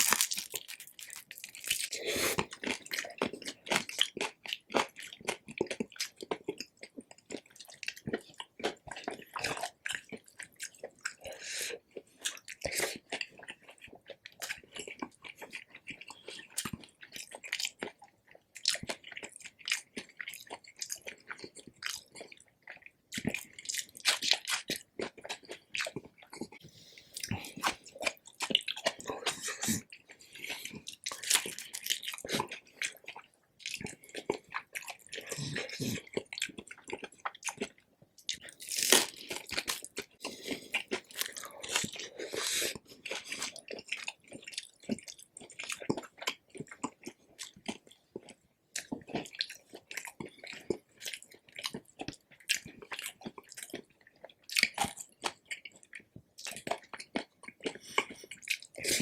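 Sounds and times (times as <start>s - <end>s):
crunchy chewing: 0.0s - 59.0s
wet mouth sounds: 1.2s - 6.2s, 24.2s - 47.8s, 56.4s - 59.0s.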